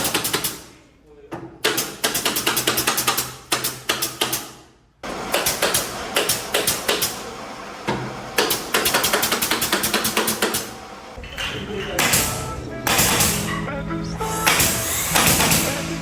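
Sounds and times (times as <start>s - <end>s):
nail gun firing: 0.0s - 0.7s, 1.6s - 4.6s, 12.0s - 13.5s, 14.4s - 16.0s.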